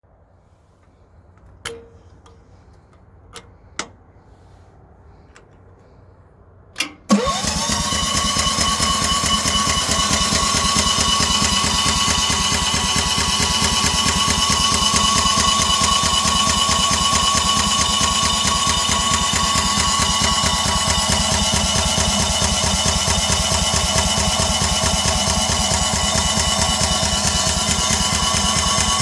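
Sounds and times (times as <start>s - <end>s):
engine running: 6.7s - 29.0s.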